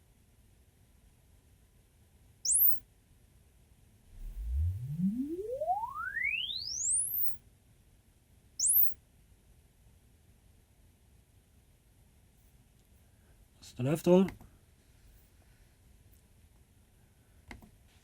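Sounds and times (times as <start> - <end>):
high rising chirp: 2.5 - 2.8, 4.2 - 7.4, 8.6 - 9.0
rising sine tone sweep: 4.1 - 7.4.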